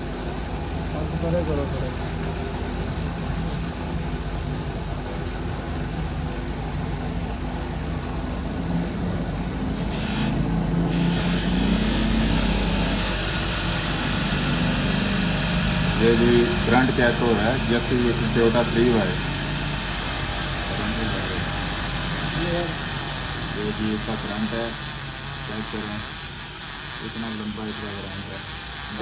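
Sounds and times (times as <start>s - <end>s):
test machine motor hum: 6.7s - 29.0s
high hiss: 9.7s - 29.0s.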